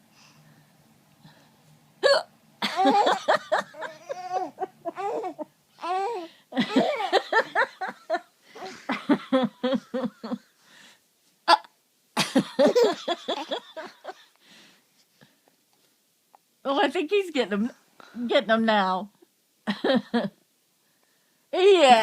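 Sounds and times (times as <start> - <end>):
boy hiccuping: 2.0 - 2.3, 11.5 - 11.7
young boy giggling: 2.6 - 10.5, 12.2 - 14.3.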